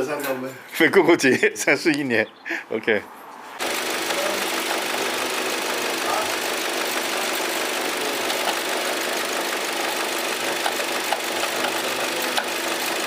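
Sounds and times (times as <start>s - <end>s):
engine idling: 3.6s - 13.0s.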